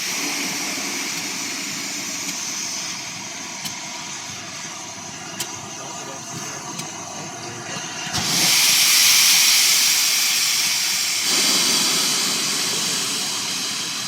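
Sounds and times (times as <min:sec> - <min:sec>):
steam locomotive hissing: 0:00.0 - 0:14.0.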